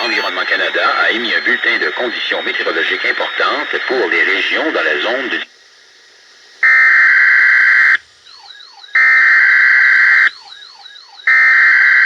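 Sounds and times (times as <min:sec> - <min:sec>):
sweeping siren-like tone: 0:00.0 - 0:03.8
warbling digital data tones: 0:00.0 - 0:04.8.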